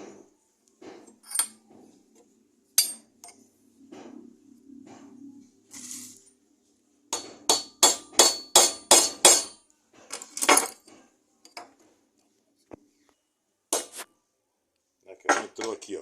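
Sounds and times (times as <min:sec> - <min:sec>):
hammer tapping on metal: 0:07.1 - 0:09.6.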